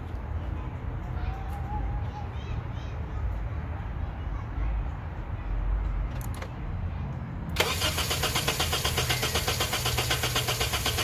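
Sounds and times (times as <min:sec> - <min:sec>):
car engine cranking on starter: 0:07.6 - 0:11.0.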